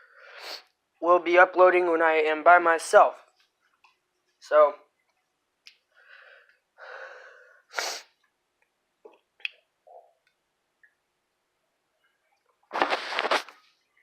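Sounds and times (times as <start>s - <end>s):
sharp burst of air through nose: 0.2s - 0.7s, 7.7s - 8.2s
sniffs: 0.2s - 0.7s, 7.7s - 8.2s
person breathing heavily: 6.0s - 8.0s
mouth clicks: 9.1s - 11.0s.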